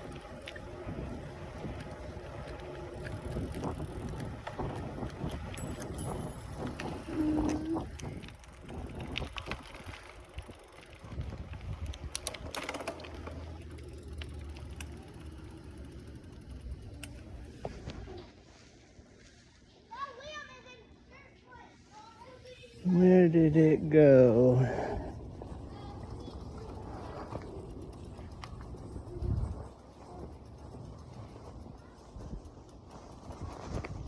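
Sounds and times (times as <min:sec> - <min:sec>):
wind buffeting microphone: 0:00.0 - 0:12.5, 0:24.7 - 0:34.0
small clicks and ticks: 0:00.0 - 0:18.0, 0:24.9 - 0:34.0
bicycle riding rumble: 0:00.0 - 0:18.3, 0:22.1 - 0:34.0.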